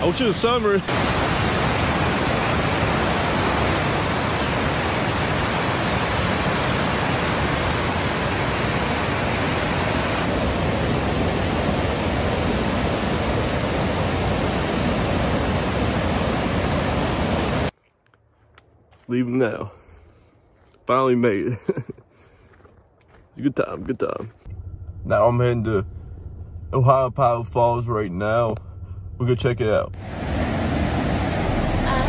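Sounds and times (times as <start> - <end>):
waterfall pouring: 0.9 - 10.3.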